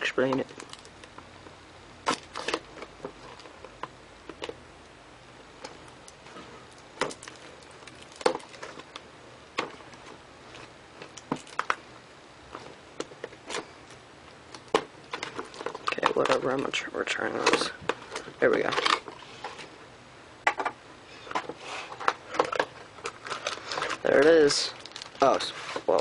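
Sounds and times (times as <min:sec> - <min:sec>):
packaging rustling: 0:00.4 - 0:01.2, 0:05.6 - 0:11.8, 0:12.5 - 0:16.7, 0:21.2 - 0:26.0.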